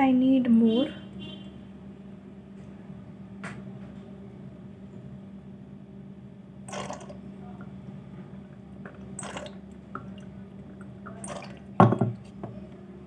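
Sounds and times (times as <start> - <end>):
steady low hum: 0.0 - 13.0
oil pouring into a glass: 6.7 - 7.2, 8.9 - 10.3, 10.9 - 12.0.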